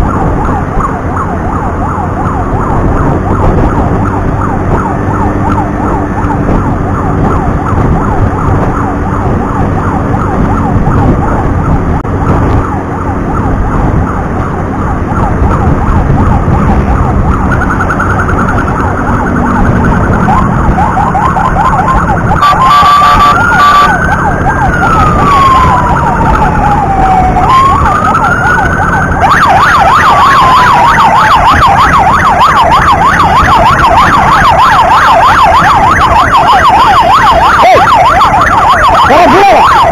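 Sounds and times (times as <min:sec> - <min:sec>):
emergency siren warbling: 0:00.0 - 0:39.9
rumble of engines and road: 0:00.0 - 0:39.9.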